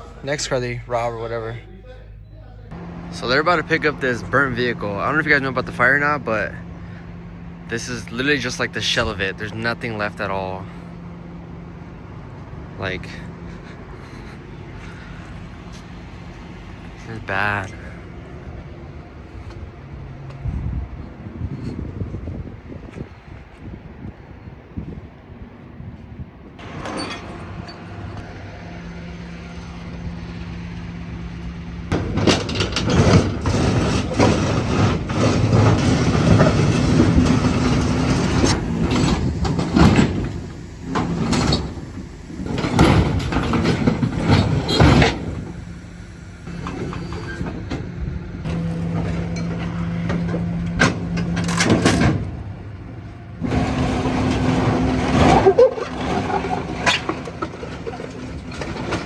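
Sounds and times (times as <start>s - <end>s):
heavy vehicle engine hum: 0.0s - 59.0s
metal scraping and clanking: 2.7s - 7.0s, 26.6s - 30.4s, 31.9s - 52.5s, 53.4s - 59.0s.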